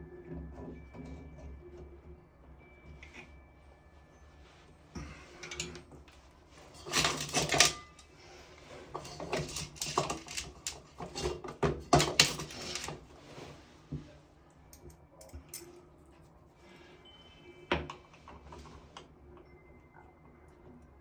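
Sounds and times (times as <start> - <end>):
metal parts clicking and scraping: 5.2 - 8.1, 8.8 - 13.1.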